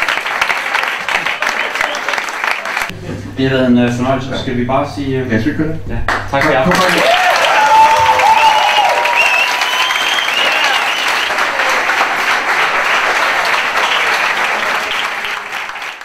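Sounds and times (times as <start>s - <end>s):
audience applauding: 0.0s - 2.9s, 6.4s - 16.0s.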